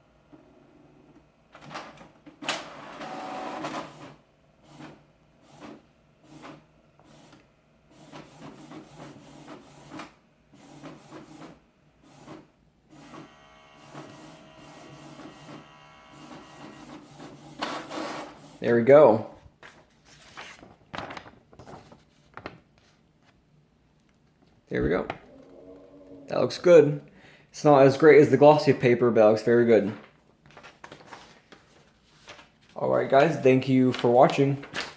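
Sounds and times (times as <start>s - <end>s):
printer motor whine: 2.5s - 3.9s, 12.9s - 17.0s
printer mechanical strokes: 10.6s - 18.6s.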